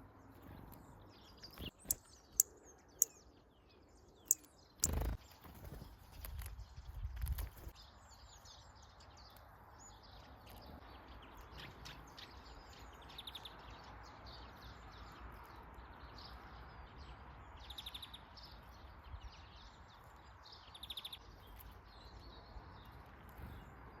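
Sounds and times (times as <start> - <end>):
songbirds chirping: 0.0 - 24.0
bird trill: 1.5 - 3.3, 4.2 - 5.2.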